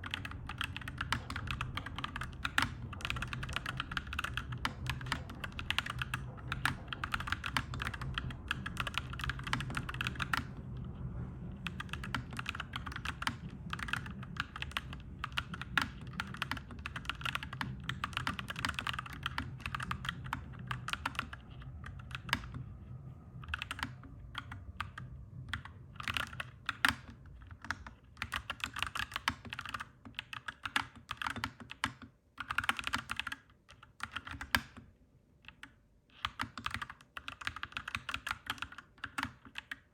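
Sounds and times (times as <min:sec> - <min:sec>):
mechanical keyboard typing: 0:00.0 - 0:10.6, 0:11.6 - 0:22.7, 0:23.4 - 0:39.9
low steady rumble: 0:00.0 - 0:29.8.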